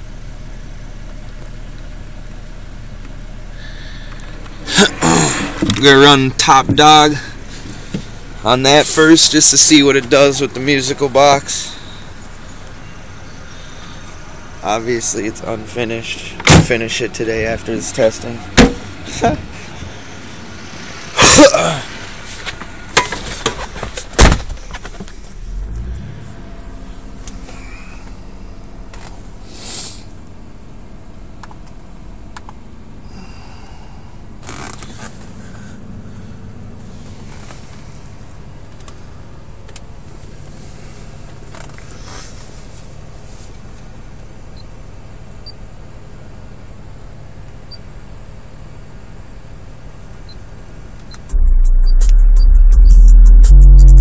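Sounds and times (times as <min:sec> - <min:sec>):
steady low bass hum: 0:00.0 - 0:54.0
knocks and clunks: 0:04.2 - 0:08.1, 0:16.4 - 0:16.8, 0:18.5 - 0:19.4, 0:22.6 - 0:25.2
car door shutting: 0:16.4 - 0:16.8, 0:18.6 - 0:19.4, 0:22.4 - 0:25.2
rising low bass tone: 0:51.2 - 0:54.0.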